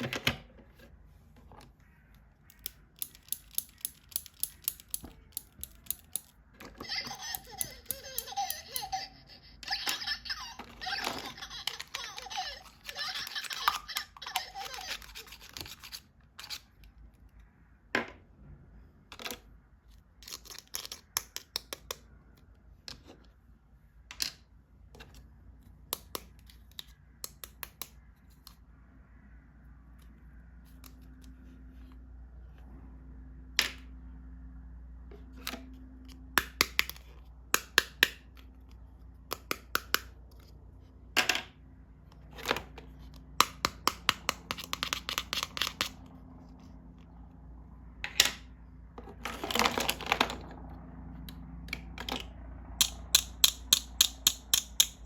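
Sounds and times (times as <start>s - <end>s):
laughter: 6.8s - 15.0s.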